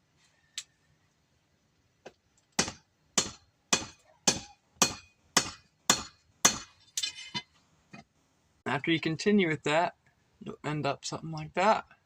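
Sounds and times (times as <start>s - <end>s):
hammer striking metal on anvil: 2.6s - 6.7s.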